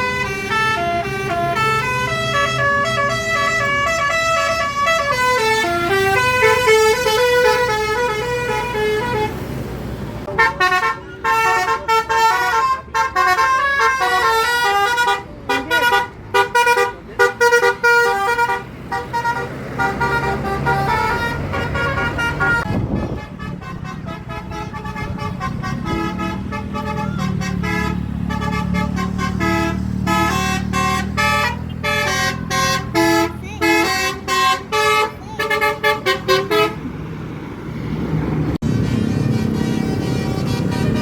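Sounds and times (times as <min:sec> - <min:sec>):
multi-tone bus horn playing tune: 0:00.0 - 0:37.0, 0:38.6 - 0:41.0
bus engine running: 0:00.0 - 0:41.0.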